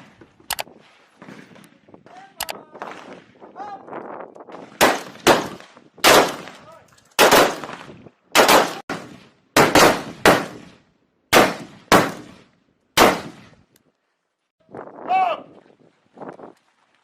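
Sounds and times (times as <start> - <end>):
rifle shots echoing: 4.6 - 6.6, 7.2 - 13.5.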